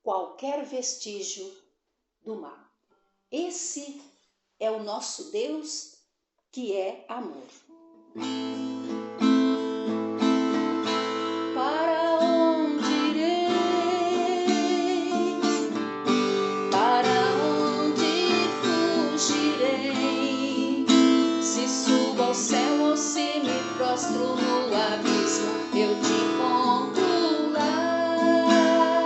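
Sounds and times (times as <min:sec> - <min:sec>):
strummed acoustic guitar: 0:08.1 - 0:29.0.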